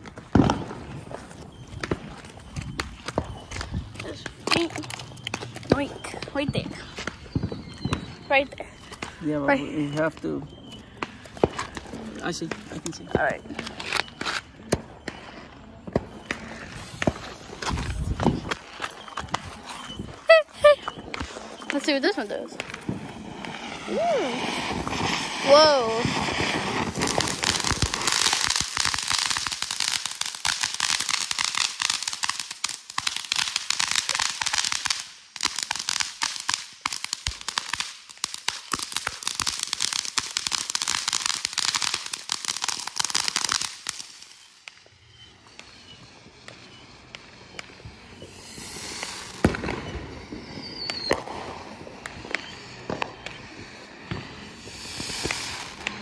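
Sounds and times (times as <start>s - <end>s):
firework crackling pops: 0.0s - 56.0s
firework hiss bursts: 16.1s - 18.4s, 21.8s - 56.0s.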